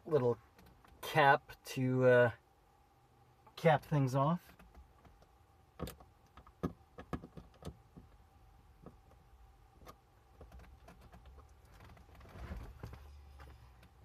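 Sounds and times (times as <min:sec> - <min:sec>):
soft rustle: 0:09.8 - 0:14.0.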